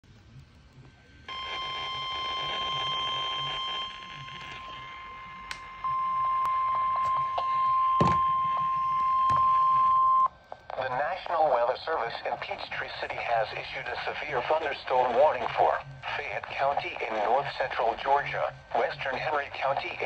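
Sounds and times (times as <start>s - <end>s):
high-pitched alarm tone: 1.3s - 10.3s.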